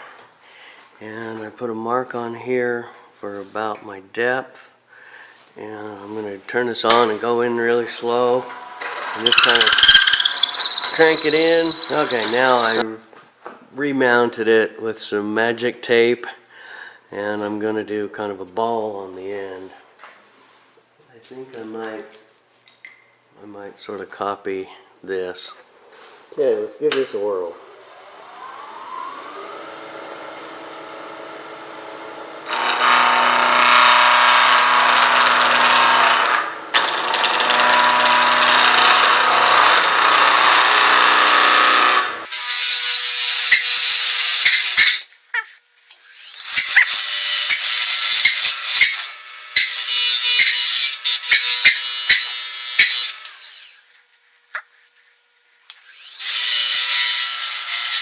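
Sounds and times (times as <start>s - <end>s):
wood lathe motor spinning: 8.2s - 12.8s, 27.6s - 45.1s, 46.1s - 53.8s, 55.9s - 58.0s
turning tool scraping wood: 8.8s - 12.8s, 46.2s - 53.5s.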